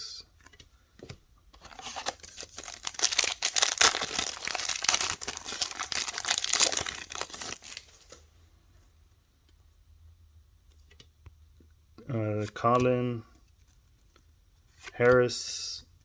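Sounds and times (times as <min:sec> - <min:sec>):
plastic wrapper crinkling and tearing: 0:01.6 - 0:08.2.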